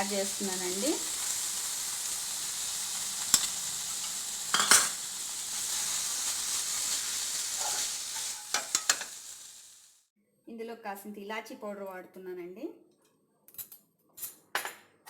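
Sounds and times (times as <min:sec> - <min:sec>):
food sizzling in a pan: 0:00.0 - 0:10.1.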